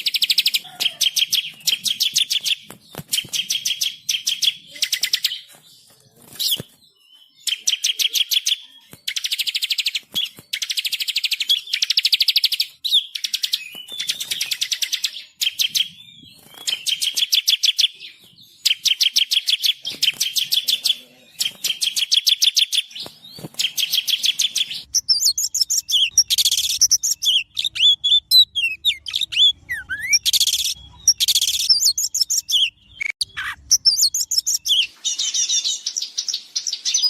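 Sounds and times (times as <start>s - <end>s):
songbird trilling: 7.4s - 37.0s.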